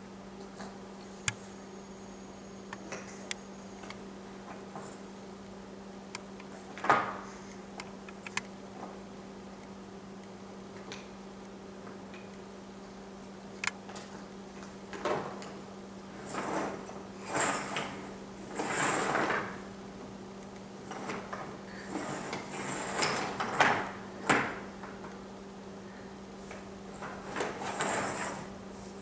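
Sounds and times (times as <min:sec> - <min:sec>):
steady low hum: 0:00.0 - 0:29.0
dishwasher rack rattling on rails: 0:16.2 - 0:19.7, 0:20.8 - 0:25.1, 0:26.9 - 0:28.6.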